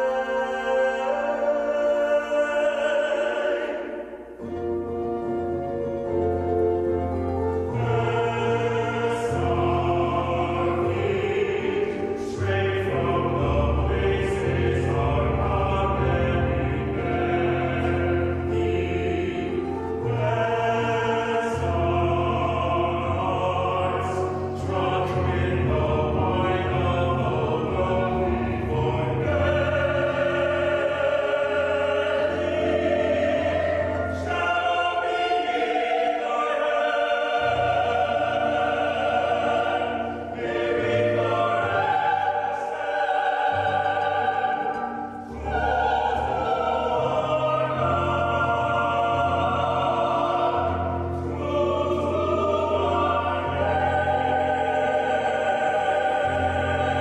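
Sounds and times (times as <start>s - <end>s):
classical singing: 0.0s - 57.0s
sustained accompaniment with bass: 4.4s - 57.0s.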